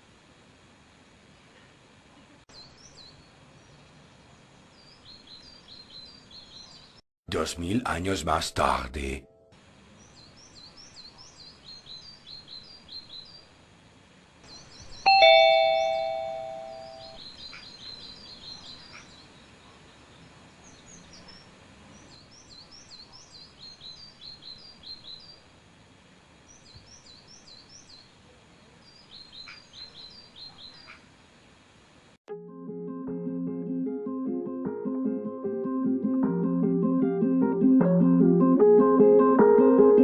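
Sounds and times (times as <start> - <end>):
small birds chirping: 1.4 - 7.0, 9.8 - 13.6, 14.4 - 31.2
bell-like ding: 15.1 - 17.2.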